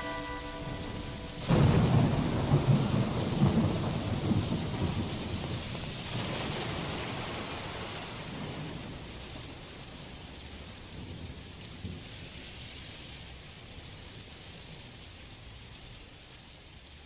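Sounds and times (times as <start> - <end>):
thunder rumbling: 0.0 - 12.3
steady rain: 0.0 - 17.0.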